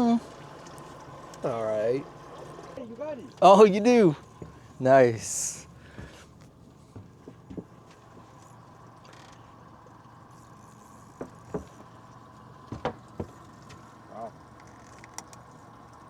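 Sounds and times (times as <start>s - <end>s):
light knocks and clicks: 6.9s - 8.5s, 11.2s - 11.9s, 12.7s - 13.9s.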